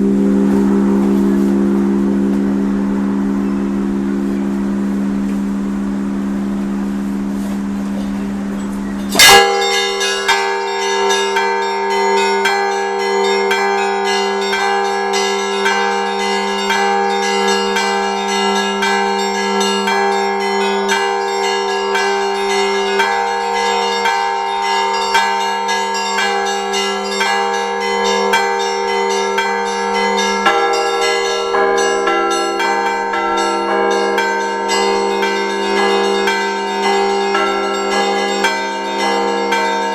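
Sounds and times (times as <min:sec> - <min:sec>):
steady low hum: 0:00.0 - 0:09.2
church bells pealing: 0:00.0 - 0:39.9
deep bell ringing: 0:00.0 - 0:39.9.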